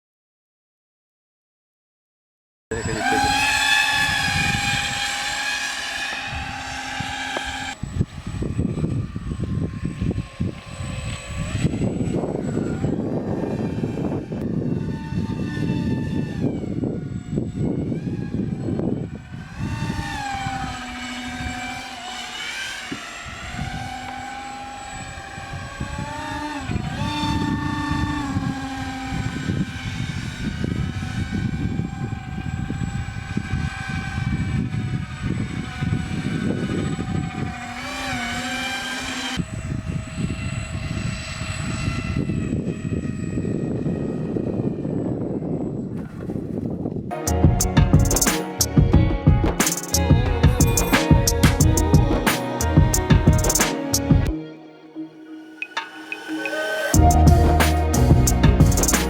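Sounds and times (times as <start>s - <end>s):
electric motor and propeller whine: 2.7s - 59.0s
heavy low rumble: 47.3s - 54.3s, 57.0s - 59.0s.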